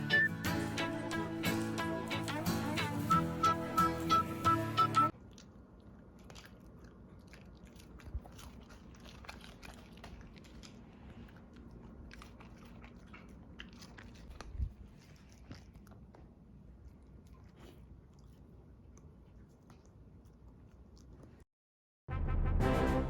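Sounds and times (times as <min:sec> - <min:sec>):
background music: 0:00.0 - 0:05.1, 0:22.1 - 0:23.0
dog chewing crunchy treat: 0:05.1 - 0:21.4.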